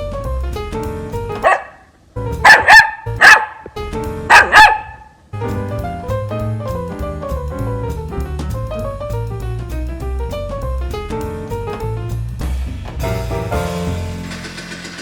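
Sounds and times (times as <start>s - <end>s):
jazz music with drums and piano: 0.0s - 1.6s, 2.2s - 4.8s, 5.4s - 15.0s
puppy barking: 1.4s - 3.7s, 4.3s - 5.2s.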